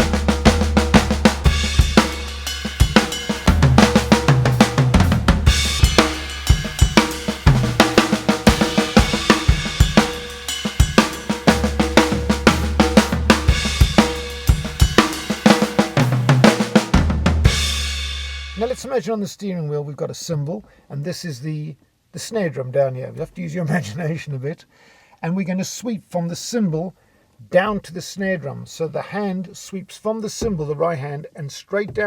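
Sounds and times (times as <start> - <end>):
drum kit played fast: 0.0 - 18.9.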